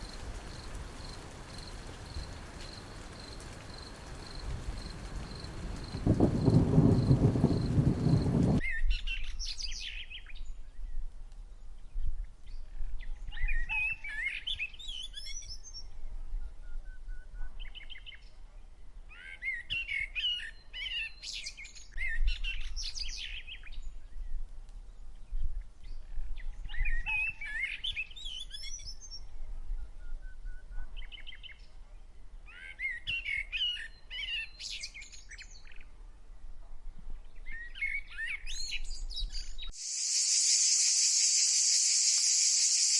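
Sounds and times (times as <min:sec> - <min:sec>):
songbird singing: 0:00.0 - 0:08.6, 0:37.4 - 0:42.9
quick ticking bird calls: 0:39.8 - 0:42.9.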